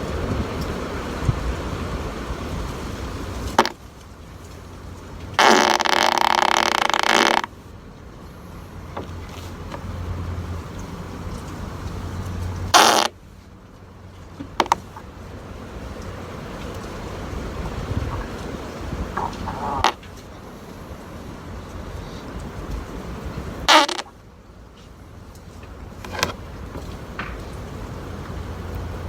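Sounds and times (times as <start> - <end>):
buzzy fart sound effect: 5.4 - 7.5, 12.7 - 13.2, 23.6 - 24.1.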